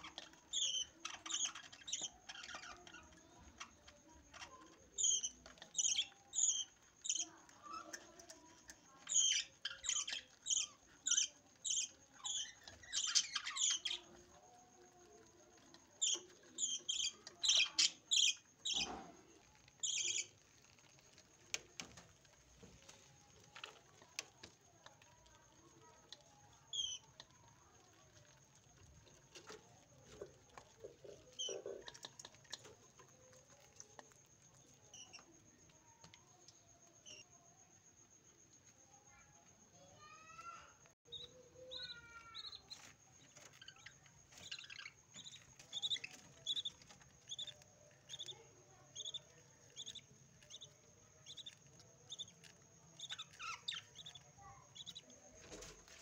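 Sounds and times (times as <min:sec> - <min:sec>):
soft bird chatter: 0:00.0 - 0:56.0
budgerigars chirping: 0:44.4 - 0:48.4, 0:53.0 - 0:54.2.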